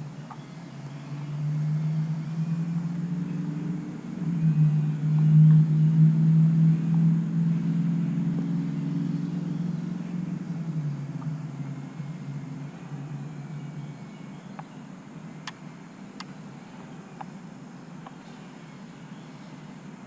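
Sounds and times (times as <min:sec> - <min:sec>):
drone propellers humming: 0:00.0 - 0:20.0.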